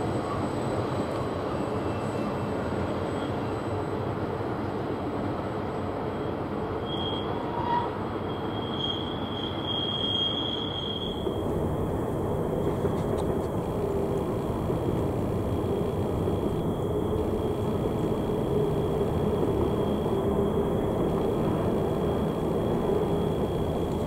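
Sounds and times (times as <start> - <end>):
freight train rumbling past: 0.0 - 24.0
high squeal of wheel flanges: 6.1 - 11.3.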